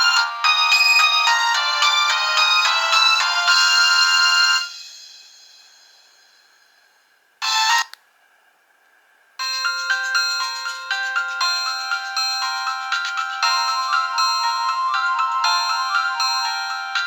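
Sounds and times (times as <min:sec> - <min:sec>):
electronic ringtone melody: 0:00.0 - 0:04.9, 0:07.4 - 0:07.9, 0:09.4 - 0:17.0.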